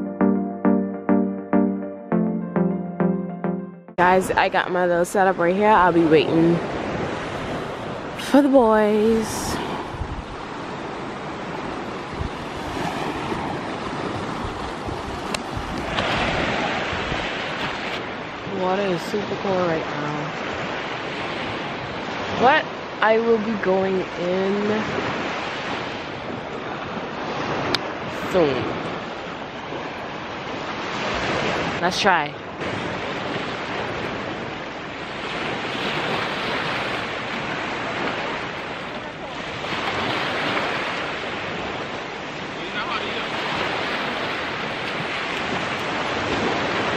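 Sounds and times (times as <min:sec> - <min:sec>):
wind buffeting microphone: 0:04.0 - 0:30.2, 0:32.5 - 0:46.9
sea waves washing onto beach: 0:04.0 - 0:46.9.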